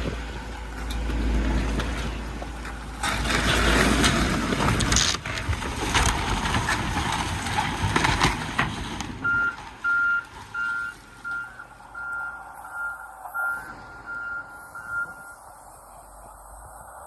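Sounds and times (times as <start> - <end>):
backup alarm beeping: 9.2 - 15.5.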